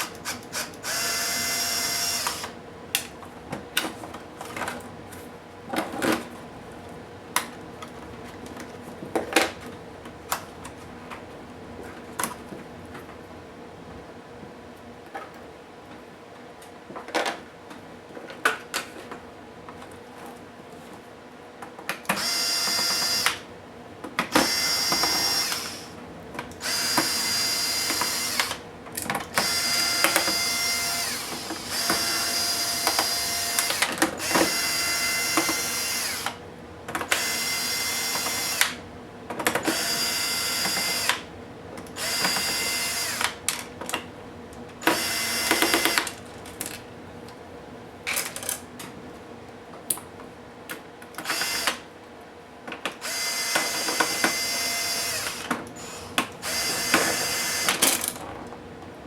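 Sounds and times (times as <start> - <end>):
electric screwdriver running: 0.0 - 2.6, 22.1 - 23.4, 24.3 - 25.9, 26.6 - 28.6, 29.4 - 36.4, 37.1 - 38.8, 39.6 - 41.2, 42.0 - 43.4, 44.9 - 46.1, 51.2 - 51.8, 53.0 - 58.1.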